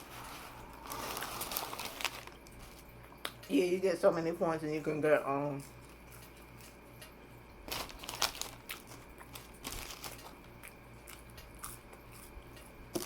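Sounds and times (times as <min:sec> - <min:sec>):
crackly food crunches: 0:00.7 - 0:03.5, 0:05.5 - 0:13.0
biting and chewing food: 0:05.5 - 0:13.0.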